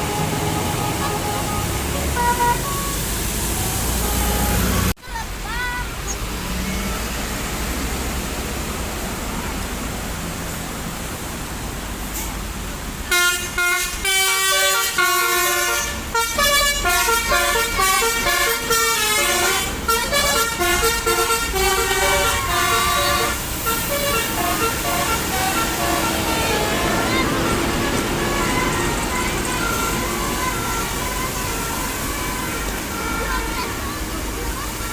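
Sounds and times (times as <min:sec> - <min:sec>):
air horn playing melody: 0:00.0 - 0:04.9, 0:13.1 - 0:33.8
vehicle engine and road noise: 0:00.0 - 0:34.9.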